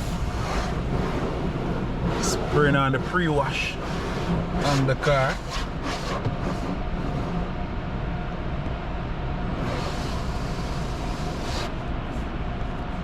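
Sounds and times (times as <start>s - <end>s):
low rumble: 0.0s - 5.0s
car wash spray hissing: 0.0s - 7.4s, 9.5s - 11.9s.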